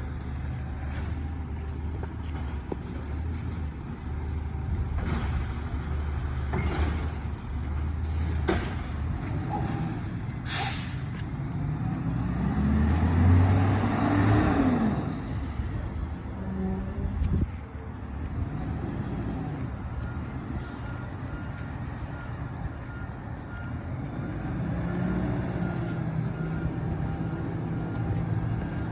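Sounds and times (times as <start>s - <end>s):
diesel truck engine running: 0.0s - 28.9s.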